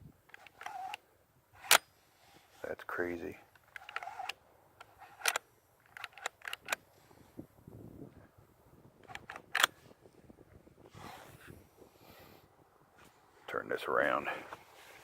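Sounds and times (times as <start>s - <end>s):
metallic clicks of shotgun handling: 1.6s - 1.9s, 3.5s - 6.8s, 9.0s - 9.8s.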